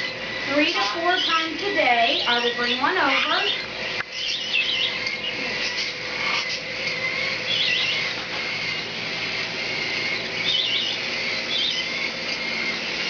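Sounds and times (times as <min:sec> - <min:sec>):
cockatiels chirping: 0:00.6 - 0:08.2, 0:10.1 - 0:12.5.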